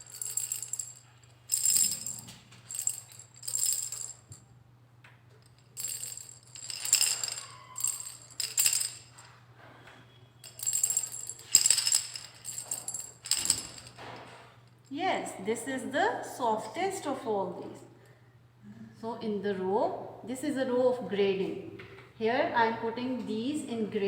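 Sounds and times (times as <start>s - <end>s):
cylinders rattling when shaken: 0.0s - 4.4s, 5.4s - 9.4s, 10.4s - 15.0s.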